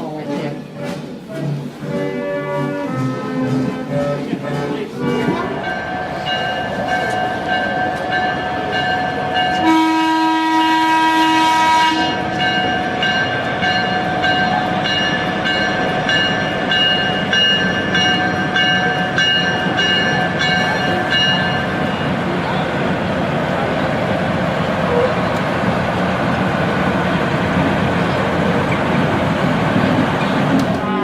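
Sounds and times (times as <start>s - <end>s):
train running noise: 0.0s - 31.0s
steam locomotive whistle: 9.5s - 12.4s.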